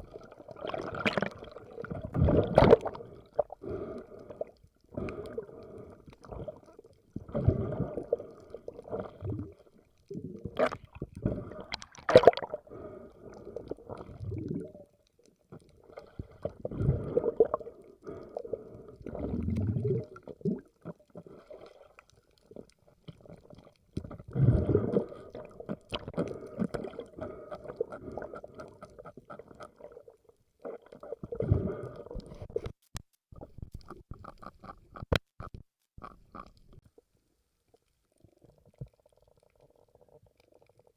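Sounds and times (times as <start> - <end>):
water gurgling and sloshing: 0.0 - 32.8.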